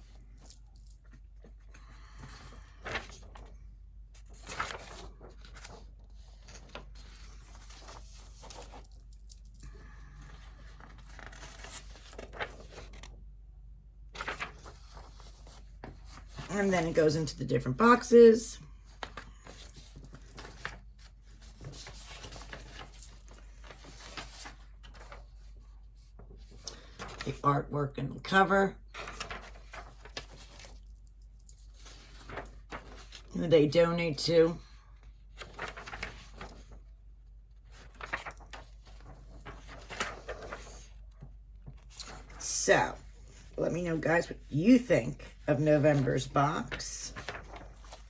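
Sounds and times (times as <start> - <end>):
paper pages rustling: 0.0 - 13.2, 14.1 - 27.4, 28.9 - 33.4, 35.0 - 48.0.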